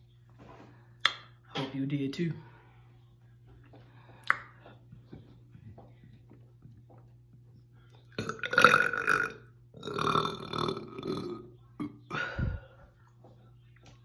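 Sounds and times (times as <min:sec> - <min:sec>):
deep burps: 0:08.2 - 0:12.3.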